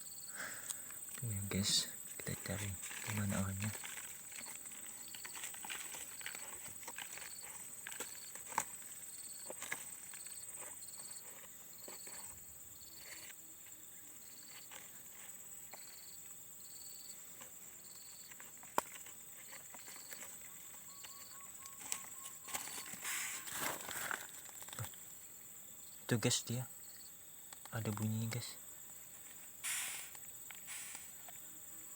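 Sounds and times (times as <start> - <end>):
scraping and rustling: 1.6 - 13.4, 17.3 - 25.1, 29.1 - 31.3.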